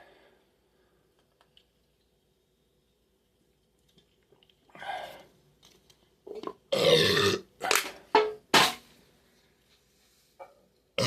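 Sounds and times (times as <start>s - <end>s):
person burping: 6.7s - 7.9s.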